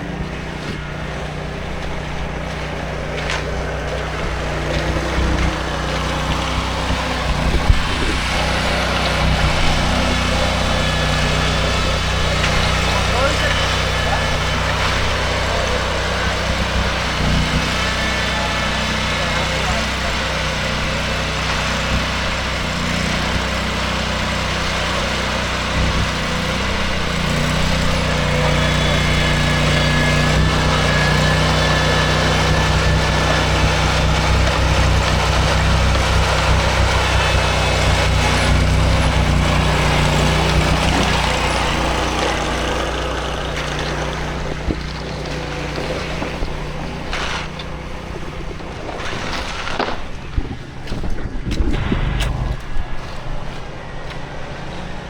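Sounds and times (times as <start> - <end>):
engine humming: 0.0 - 55.0.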